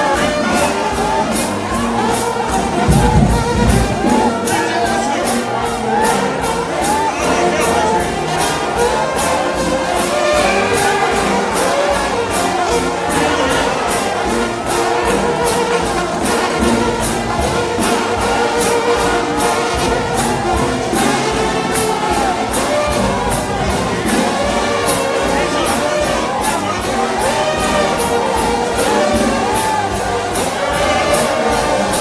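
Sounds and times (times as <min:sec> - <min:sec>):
drum and cymbal beat: 0:00.0 - 0:32.0
massed brass melody: 0:00.0 - 0:32.0.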